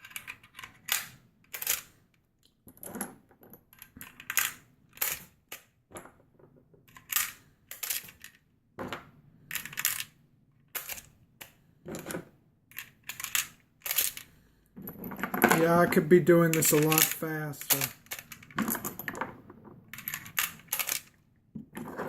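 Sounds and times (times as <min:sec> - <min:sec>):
cartridges clicking into magazine: 0:20.4 - 0:21.1.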